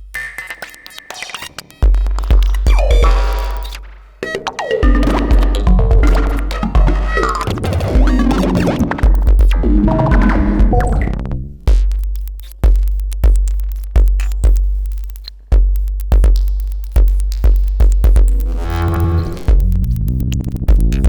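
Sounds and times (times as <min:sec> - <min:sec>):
deep bass hits: 0:04.8 - 0:12.0, 0:17.0 - 0:21.0
synthesizer struck ringing tones: 0:09.5 - 0:11.3.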